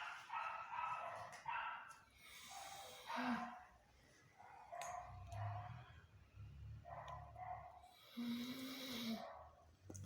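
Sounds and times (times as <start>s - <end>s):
dog snoring: 8.1s - 9.2s.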